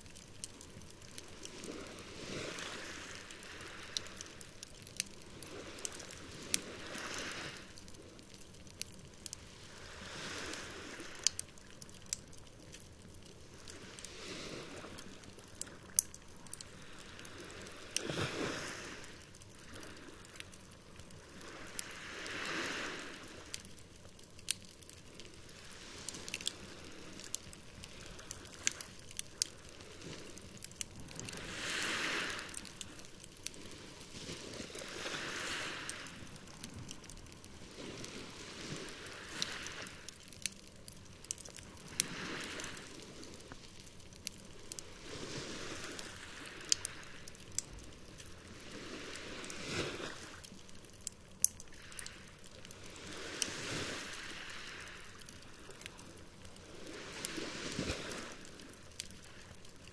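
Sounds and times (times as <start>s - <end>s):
campfire crackling and popping: 0.0s - 59.9s
waves washing on shore: 0.0s - 59.9s.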